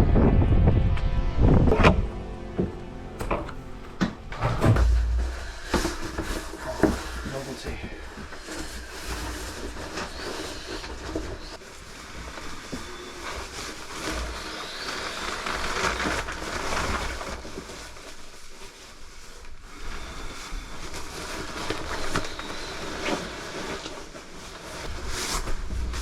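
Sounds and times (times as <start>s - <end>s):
short crunches: 3.2s - 10.2s.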